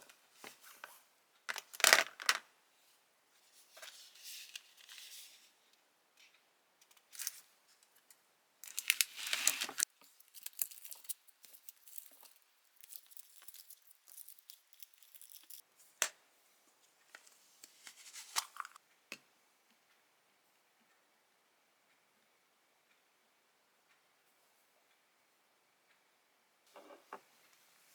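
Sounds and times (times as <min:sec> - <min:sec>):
rustling and crinkling: 0:03.4 - 0:05.6, 0:07.1 - 0:15.6, 0:16.7 - 0:18.8.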